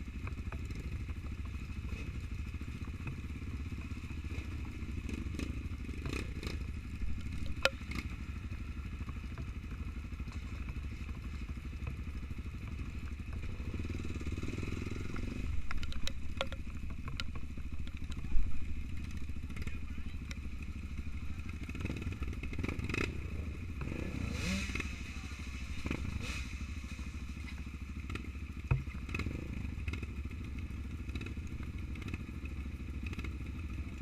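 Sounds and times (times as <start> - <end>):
motorcycle engine running: 0.0 - 34.0
sharp knocks and clatters: 15.6 - 18.5.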